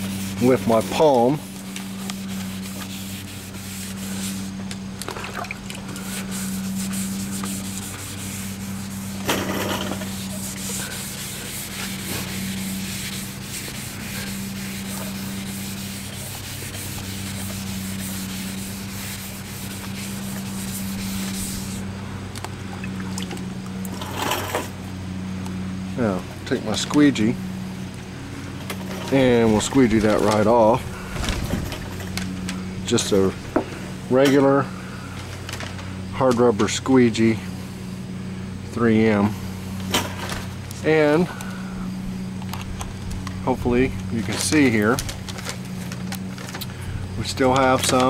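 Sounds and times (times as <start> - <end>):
wet sandpaper rubbing: 0.0 - 5.0, 5.8 - 21.9, 28.8 - 33.4, 43.4 - 48.0
steady low hum: 0.0 - 48.0.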